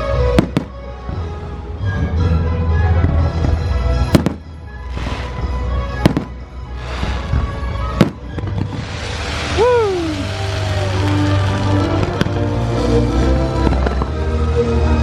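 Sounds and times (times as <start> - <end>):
music: 0.0 - 15.0
fireworks bursting with hiss: 4.2 - 14.4.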